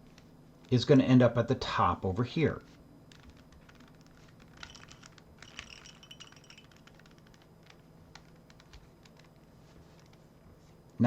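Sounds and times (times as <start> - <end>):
puzzle cube layers clicking: 3.1 - 10.2.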